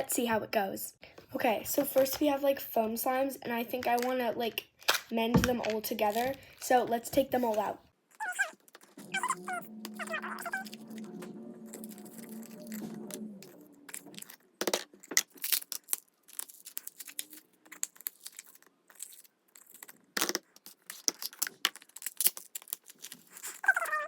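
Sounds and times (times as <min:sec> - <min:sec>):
slime clicking and crackling: 0:13.9 - 0:23.8.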